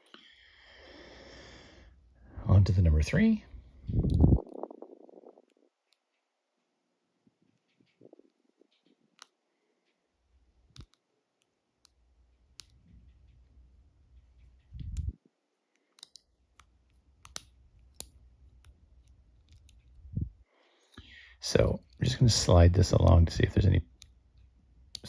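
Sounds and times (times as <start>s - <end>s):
low rumbling handling noise: 14.2s - 15.2s
lock pick clicks and ticks: 16.0s - 20.0s.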